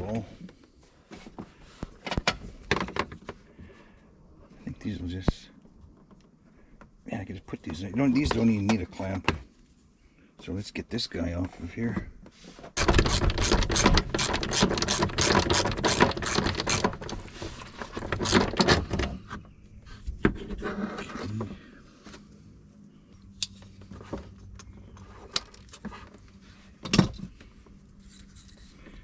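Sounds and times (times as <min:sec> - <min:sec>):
ratchet wrench clicking: 0:12.8 - 0:17.2, 0:18.2 - 0:18.5.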